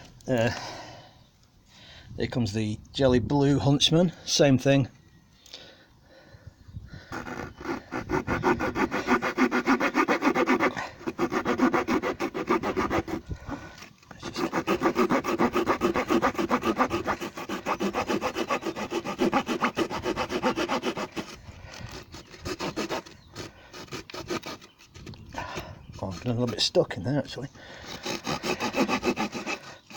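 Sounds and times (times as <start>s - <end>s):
small saw cutting wood: 7.0s - 27.0s, 27.7s - 29.9s.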